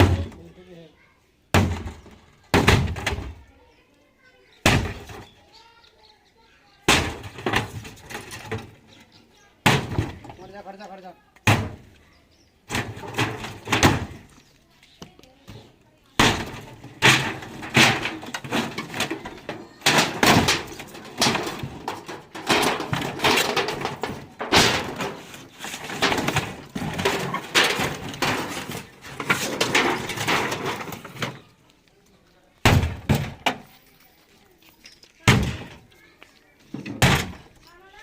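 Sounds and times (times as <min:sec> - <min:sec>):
refrigerator being smashed: 0:00.0 - 0:00.4, 0:01.5 - 0:03.4, 0:04.6 - 0:05.3, 0:06.9 - 0:08.8, 0:09.6 - 0:10.5, 0:11.4 - 0:11.9, 0:12.7 - 0:14.3, 0:16.2 - 0:31.4, 0:32.6 - 0:33.6, 0:35.2 - 0:35.8, 0:36.8 - 0:37.6
metal and plastic rattling: 0:06.9 - 0:09.1, 0:12.7 - 0:14.4, 0:16.2 - 0:31.6.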